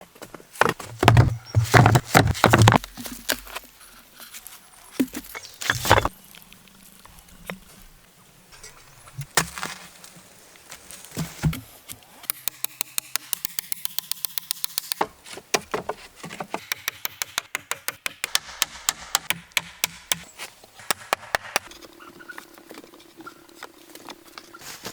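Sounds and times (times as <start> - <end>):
heavy knocks on wood: 0.6 - 2.8.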